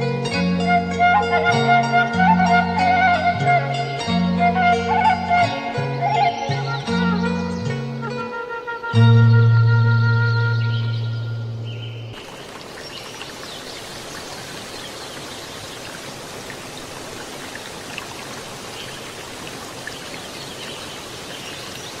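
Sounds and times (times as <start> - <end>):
background music: 0.0 - 11.9
running water: 12.2 - 22.0.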